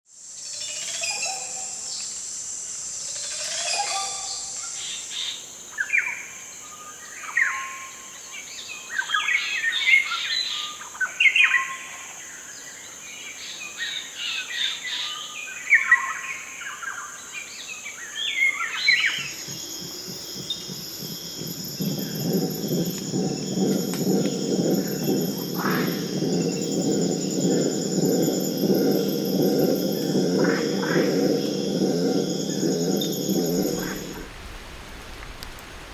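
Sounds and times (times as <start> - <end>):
high-pitched insect drone: 18.8 - 34.4
birds calling and chirping: 18.9 - 34.3
low rumbling: 19.2 - 35.9.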